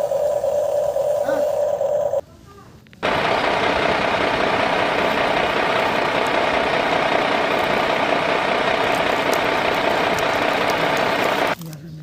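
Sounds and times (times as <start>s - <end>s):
model motor buzzing hum: 3.0s - 11.6s.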